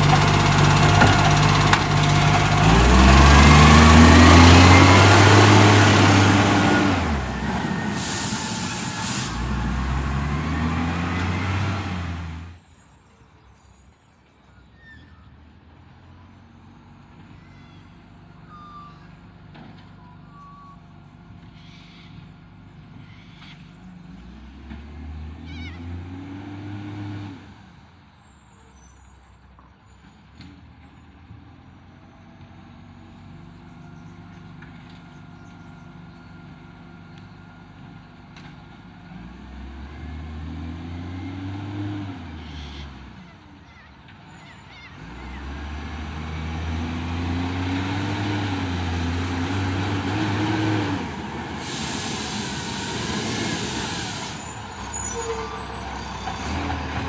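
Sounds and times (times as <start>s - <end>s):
diesel truck engine revving: 0.0s - 12.6s, 24.1s - 27.8s, 38.7s - 43.3s, 45.0s - 57.0s
loud air hiss: 5.8s - 10.0s, 49.1s - 56.1s.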